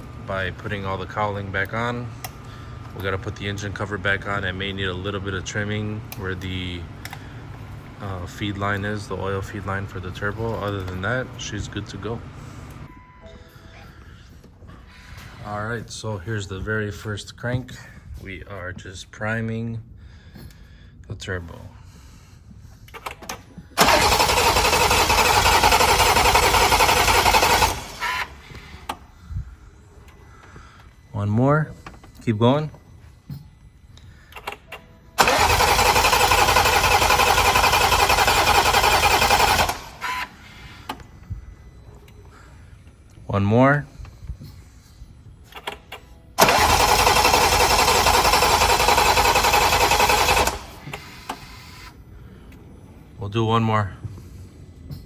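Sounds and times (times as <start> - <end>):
engine cranking by starter: 0.0 - 12.9, 22.9 - 29.2, 34.3 - 41.4, 45.4 - 52.6.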